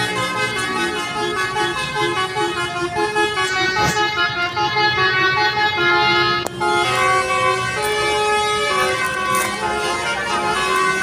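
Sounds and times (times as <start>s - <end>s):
bus horn playing a melody: 0.0s - 11.0s.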